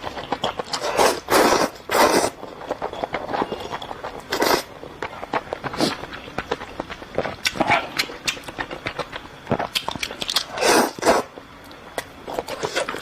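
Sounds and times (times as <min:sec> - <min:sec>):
wet chewing and mouth clicks: 0:00.0 - 0:13.0
noodle slurps: 0:00.7 - 0:02.4, 0:10.2 - 0:11.3.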